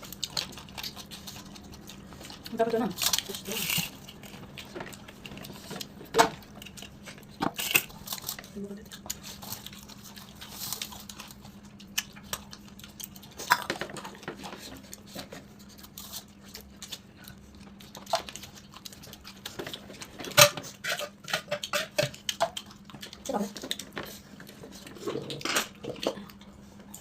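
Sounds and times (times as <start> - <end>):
utensils clattering on dishes: 20.2 - 22.2.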